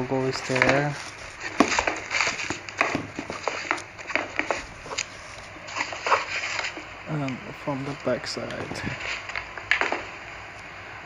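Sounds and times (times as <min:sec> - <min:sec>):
sneakers being handled: 0:00.0 - 0:06.9.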